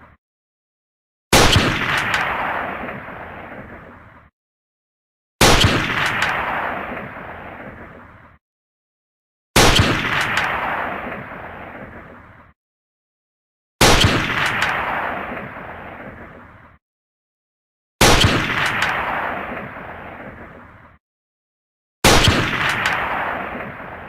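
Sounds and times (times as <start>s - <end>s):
rifle gunshot with rolling echo: 1.4s - 3.8s, 5.4s - 7.9s, 9.6s - 11.9s, 13.8s - 16.2s, 18.0s - 20.5s, 22.0s - 24.0s.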